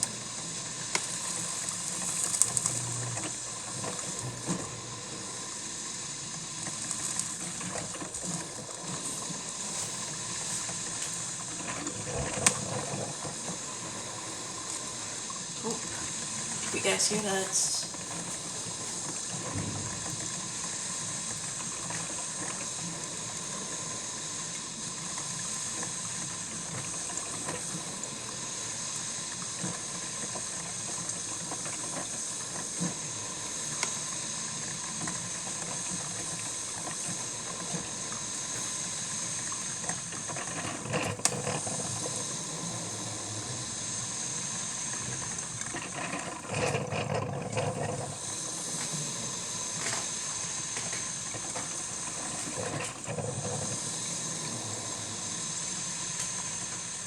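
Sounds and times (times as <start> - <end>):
coffee maker steam hiss: 0.0 - 57.0.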